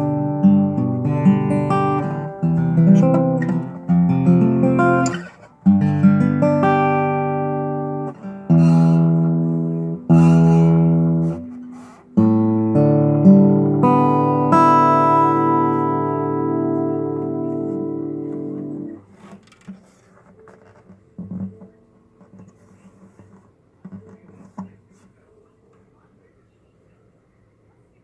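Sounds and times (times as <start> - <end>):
acoustic guitar chords: 0.0 - 19.1
guitar string buzz: 0.0 - 19.4.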